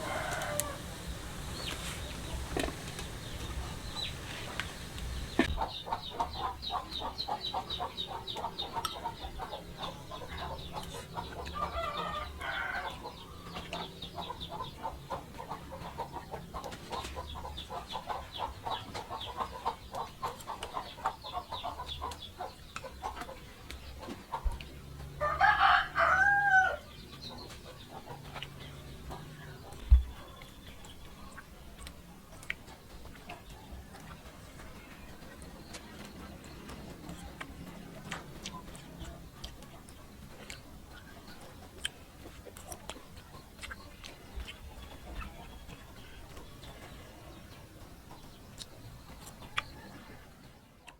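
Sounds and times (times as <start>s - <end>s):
rooster crowing: 0.0s - 2.3s, 11.6s - 13.0s, 25.2s - 26.8s
chickens clucking: 0.0s - 50.9s.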